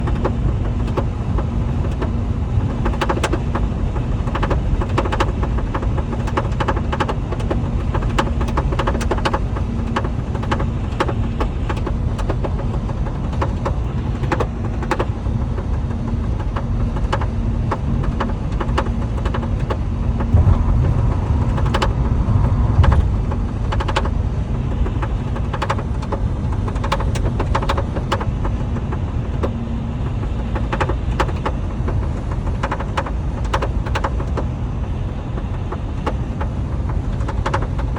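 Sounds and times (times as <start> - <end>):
car interior rattling clicks: 0.0 - 34.5, 35.1 - 37.9
car low rumble: 0.0 - 37.9.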